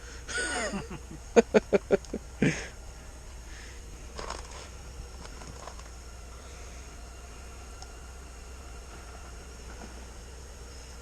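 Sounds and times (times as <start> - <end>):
steady low hum: 0.0 - 11.0
faint rustling and crinkling: 4.0 - 6.0.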